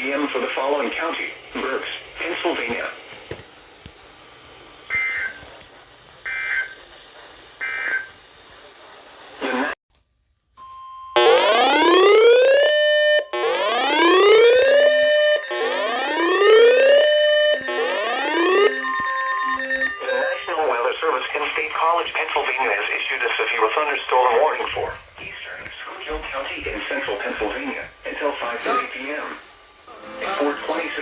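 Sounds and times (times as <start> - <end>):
electronic whooping alarm: 11.2 - 20.6
two-tone digital chirps: 13.2 - 20.6.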